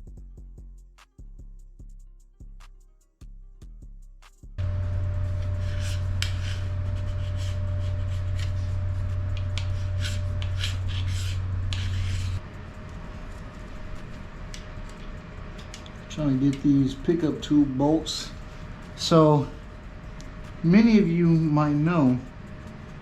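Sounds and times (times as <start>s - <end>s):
steady low hum: 4.5s - 23.0s
hand tools scraping and clinking: 4.6s - 12.4s.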